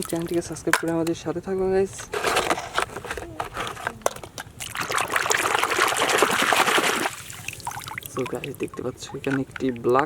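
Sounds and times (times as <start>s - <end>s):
water running and splashing: 0.0s - 0.5s, 4.3s - 10.0s.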